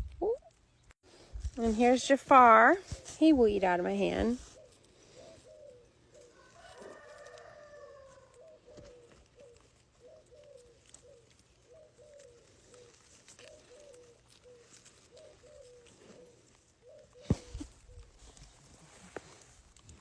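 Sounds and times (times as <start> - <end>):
soft low bird calls: 4.4 - 18.3.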